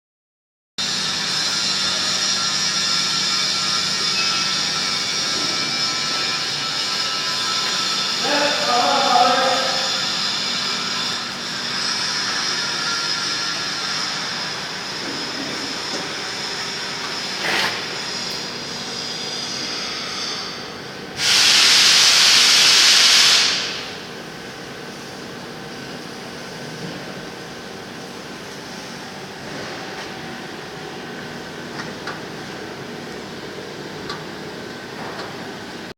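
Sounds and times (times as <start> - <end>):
burst of hissing: 21.2 - 24.0
steady machine hiss: 21.2 - 24.2.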